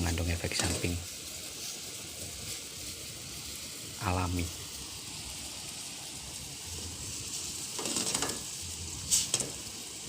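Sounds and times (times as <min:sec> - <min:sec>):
pot simmering with a hiss: 0:00.0 - 0:10.0
utensil clinking on a pot: 0:07.8 - 0:08.5.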